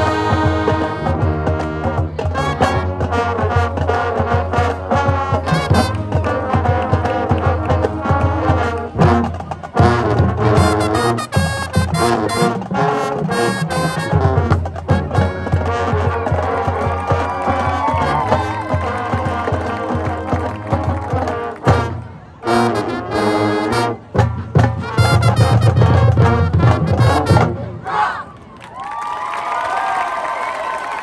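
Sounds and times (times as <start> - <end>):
marching band playing: 0.0 - 28.2.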